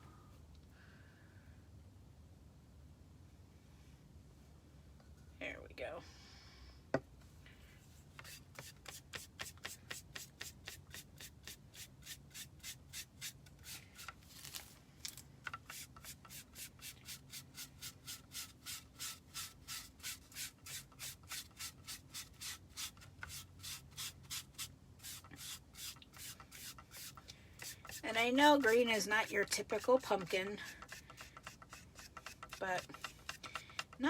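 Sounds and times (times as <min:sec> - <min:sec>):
foam brush rubbing paint: 0:15.6 - 0:33.9.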